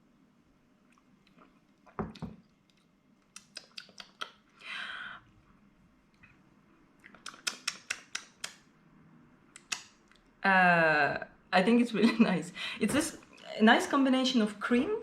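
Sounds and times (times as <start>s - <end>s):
lip smacks and mouth clicks: 0.9s - 4.6s, 7.0s - 8.7s, 9.5s - 10.4s.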